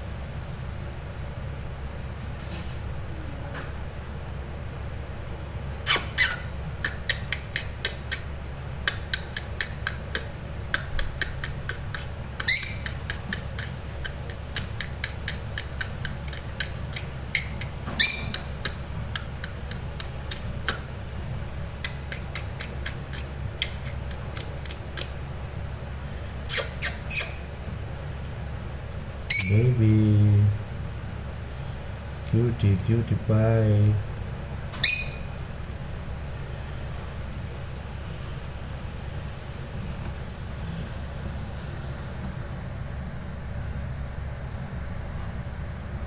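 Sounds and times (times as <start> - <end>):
steady low hum: 0.0 - 46.0
bird chicks chirping: 5.9 - 25.4, 29.2 - 29.9, 33.9 - 35.6
bird chicks squawking: 5.9 - 25.4, 29.2 - 29.8, 34.0 - 35.6.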